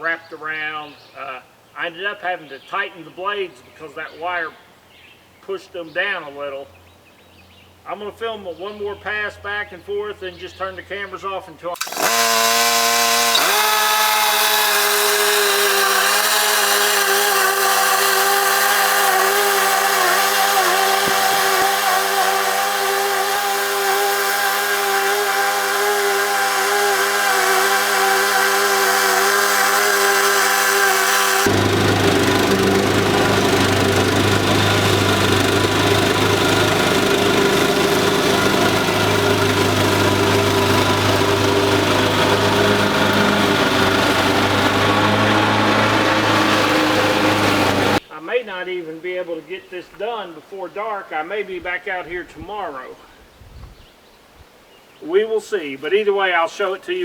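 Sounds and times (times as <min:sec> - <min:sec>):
mower engine cutting grass: 0:11.8 - 0:48.0.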